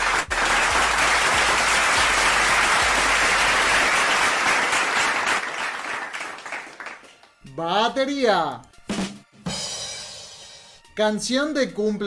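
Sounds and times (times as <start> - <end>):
crowd clapping: 0.0 - 7.4.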